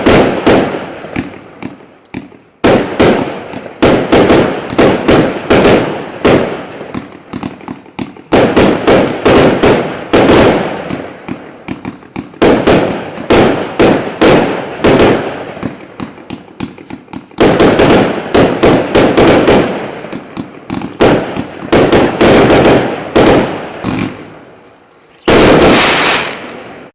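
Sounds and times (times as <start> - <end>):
firework battery bangs: 20.9 - 26.9.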